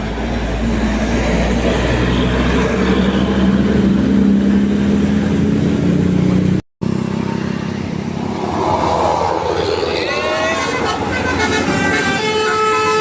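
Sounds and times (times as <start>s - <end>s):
bus engine droning: 0.0s - 13.0s.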